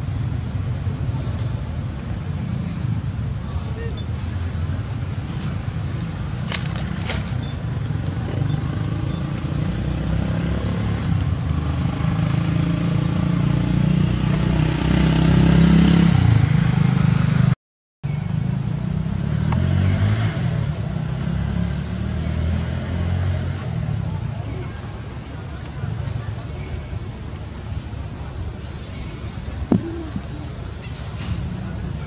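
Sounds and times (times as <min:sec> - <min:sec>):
vehicle engine humming: 0:18.2 - 0:32.0.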